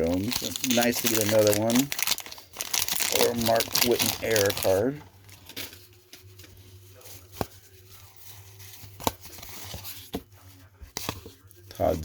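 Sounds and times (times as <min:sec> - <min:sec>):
cards being flipped by hand: 0:08.3 - 0:10.2.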